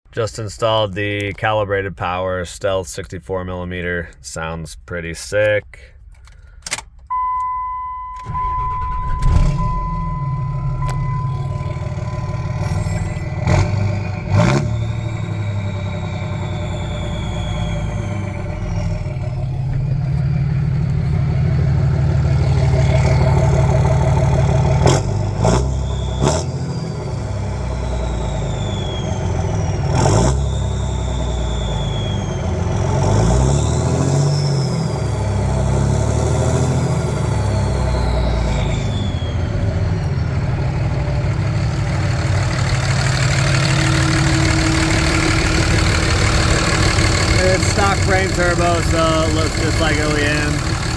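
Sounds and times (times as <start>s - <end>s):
diesel engine starting and revving: 6.0s - 50.9s
turbo whistling: 7.1s - 50.9s
electronic chime: 7.2s - 18.4s, 43.1s - 50.5s.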